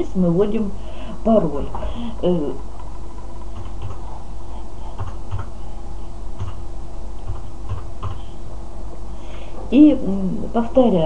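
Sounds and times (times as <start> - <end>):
low electrical hum: 0.0 - 11.0
keyboard typing: 1.6 - 4.2, 4.9 - 5.6, 6.4 - 6.6, 7.2 - 8.2.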